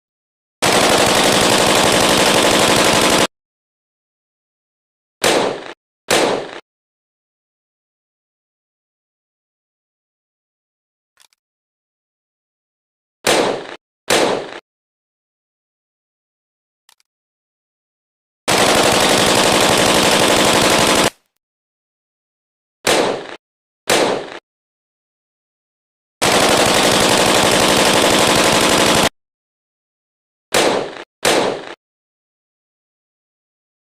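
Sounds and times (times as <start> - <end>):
automatic rifle bursts: 0.6 - 3.3, 18.5 - 21.2, 26.2 - 29.1.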